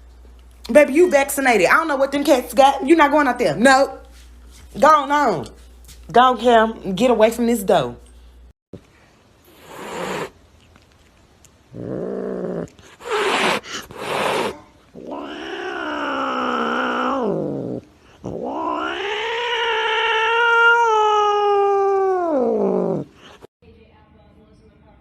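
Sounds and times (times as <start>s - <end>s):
cat hissing and growling: 9.4s - 23.5s
cat yowling: 13.0s - 23.1s.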